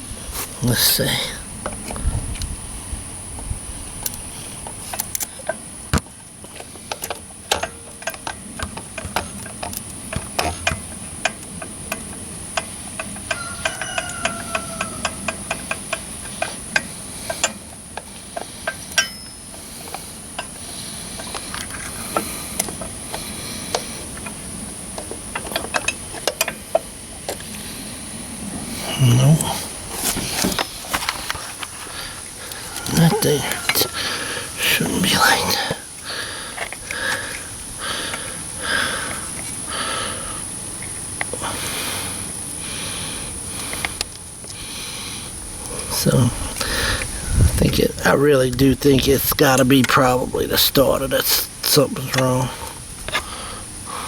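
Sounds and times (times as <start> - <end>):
tractor starter clicking: 6.4 - 27.6, 29.4 - 39.5
high-pitched insect drone: 11.6 - 49.1.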